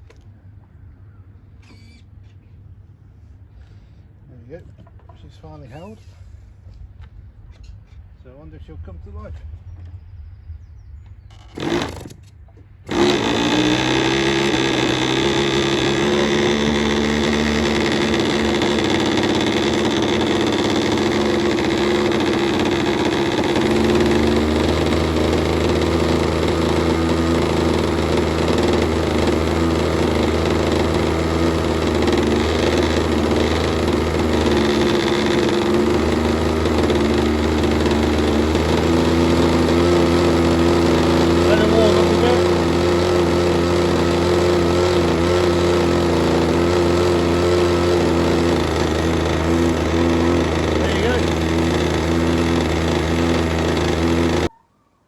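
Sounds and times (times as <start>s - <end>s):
model aircraft engine running: 11.4s - 54.5s.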